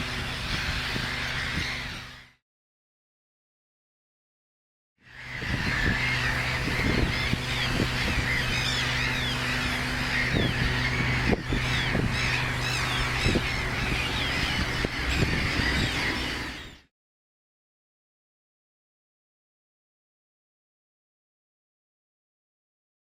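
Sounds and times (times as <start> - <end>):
steady low hum: 0.0 - 2.3, 5.0 - 16.9
birds chirping: 0.0 - 2.4, 5.1 - 16.9.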